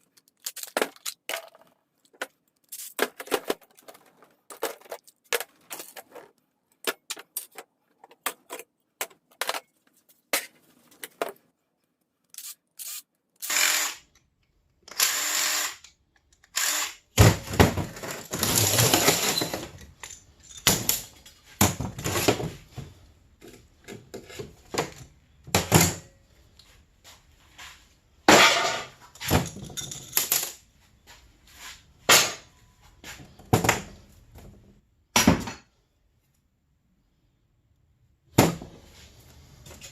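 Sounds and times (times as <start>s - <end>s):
power tool running: 13.4s - 14.0s, 14.9s - 15.8s, 16.6s - 17.0s.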